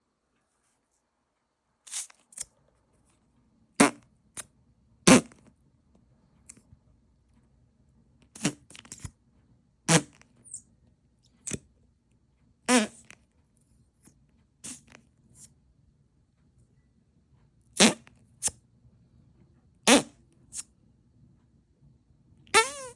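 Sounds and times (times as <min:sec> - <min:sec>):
fart sounds from a machine: 0:03.8 - 0:04.0, 0:05.1 - 0:05.5, 0:08.4 - 0:09.0, 0:09.9 - 0:10.2, 0:12.7 - 0:13.2, 0:14.6 - 0:15.0, 0:17.8 - 0:18.1, 0:19.9 - 0:20.6, 0:22.5 - 0:22.9.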